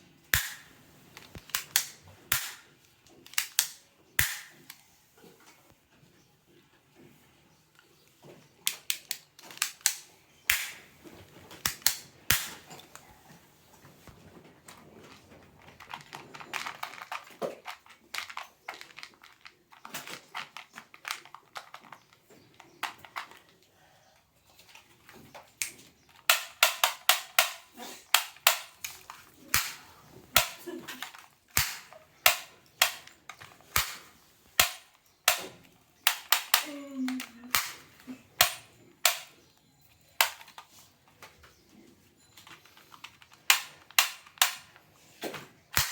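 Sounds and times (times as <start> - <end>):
plastic toy guns clicking: 0.3 - 4.8, 8.6 - 10.9, 11.5 - 13.0, 15.8 - 23.5, 25.6 - 39.4, 40.2 - 40.8, 42.4 - 44.9.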